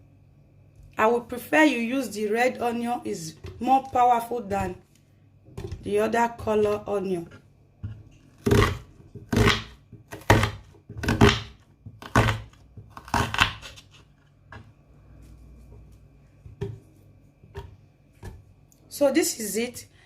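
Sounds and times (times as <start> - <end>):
knife crunching through onion: 7.8 - 14.2.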